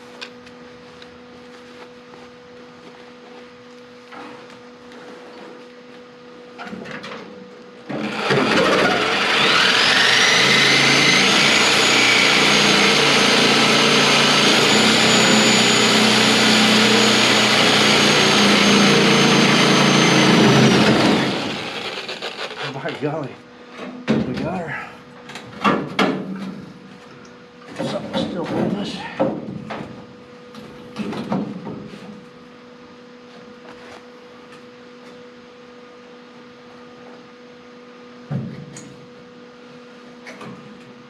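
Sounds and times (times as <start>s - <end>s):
cut-off wheel grinding steel: 7.9s - 22.9s.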